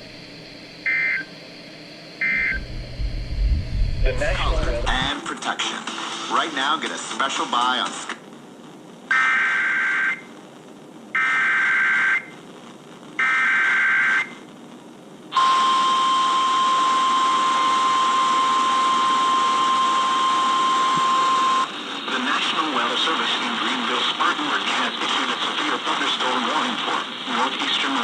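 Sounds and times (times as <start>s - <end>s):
radio hiss: 0.0s - 9.1s, 14.2s - 28.0s
steady warning alarm tone: 0.8s - 1.3s, 2.2s - 4.0s, 15.3s - 21.7s.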